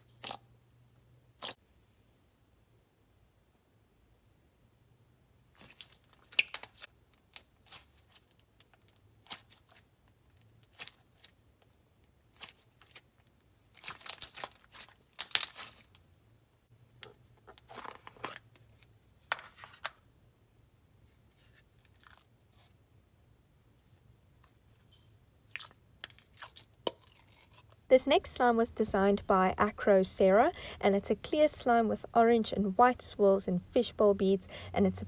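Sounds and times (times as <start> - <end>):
slime crackling and popping: 6.1 - 9.8, 13.8 - 16.0.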